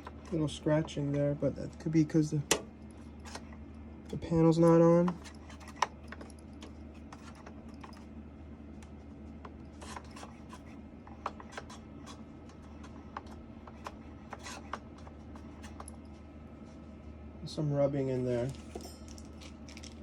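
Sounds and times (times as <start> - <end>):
scratching rubbing scrapes: 9.8 - 10.8.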